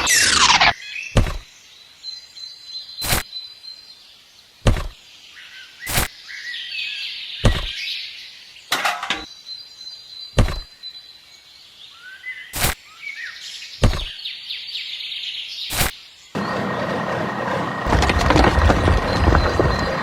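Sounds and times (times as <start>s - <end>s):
birds chirping: 0.0s - 17.0s, 17.7s - 20.0s
sharp knocks: 1.2s - 1.4s, 10.4s - 10.7s.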